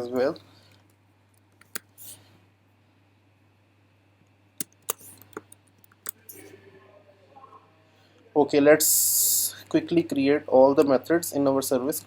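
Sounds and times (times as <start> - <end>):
low steady hum: 0.0 - 12.0
keyboard and mouse clicks: 1.5 - 1.9, 4.6 - 6.4.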